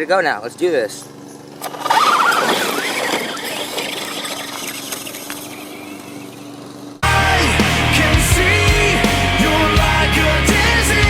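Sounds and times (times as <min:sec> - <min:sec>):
electric motor whining: 0:01.2 - 0:07.1.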